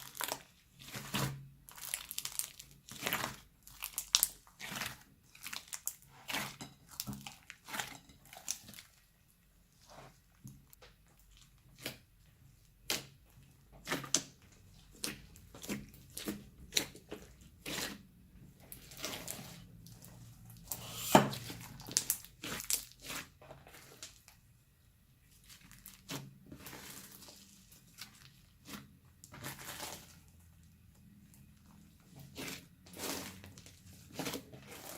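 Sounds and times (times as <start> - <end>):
slime popping and crackling: 0.0 - 6.0.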